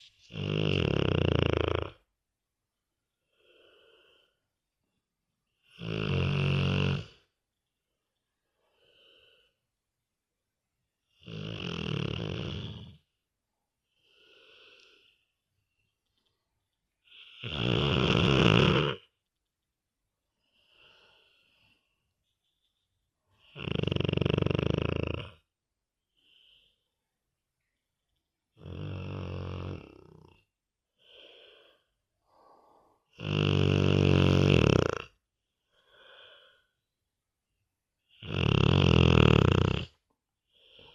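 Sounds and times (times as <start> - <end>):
dog snoring: 0.3 - 2.0, 5.7 - 7.2, 11.1 - 13.0, 17.1 - 19.0, 23.4 - 25.4, 28.6 - 30.4, 33.1 - 35.2, 38.1 - 40.0.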